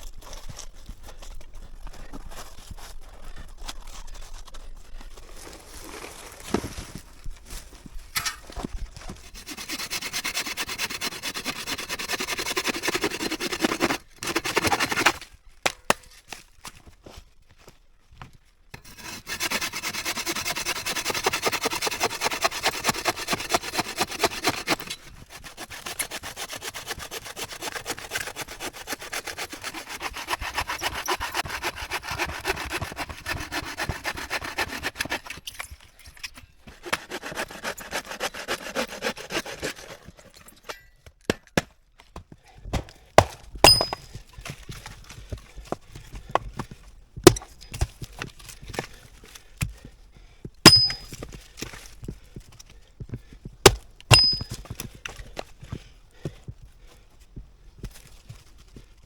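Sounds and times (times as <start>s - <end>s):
hand saw cutting wood: 9.0s - 15.3s, 18.8s - 35.5s, 36.6s - 40.4s, 43.2s - 49.9s, 50.6s - 52.0s, 53.6s - 55.2s.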